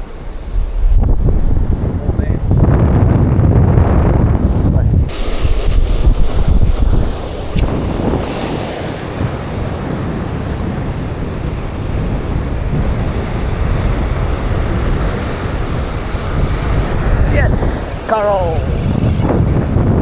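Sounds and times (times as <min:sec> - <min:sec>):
wind buffeting microphone: 0:00.0 - 0:20.0
sea waves washing: 0:04.2 - 0:20.0.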